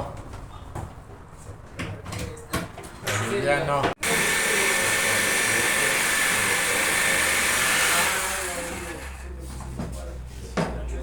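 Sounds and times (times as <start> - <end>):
power tool motor whirring: 4.0 - 9.4.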